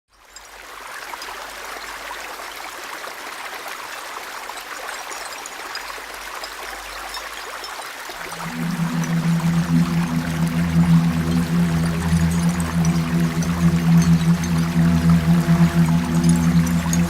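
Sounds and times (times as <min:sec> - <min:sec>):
low held music notes: 0:08.2 - 0:17.0.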